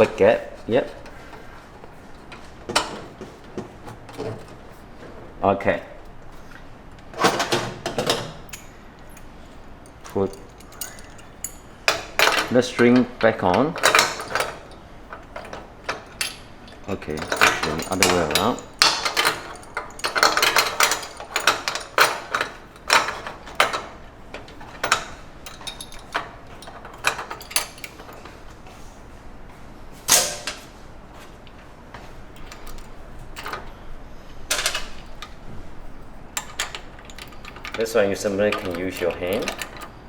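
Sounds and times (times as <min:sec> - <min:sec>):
metal parts clinking: 0:07.0 - 0:28.3, 0:32.3 - 0:33.9, 0:34.5 - 0:40.0.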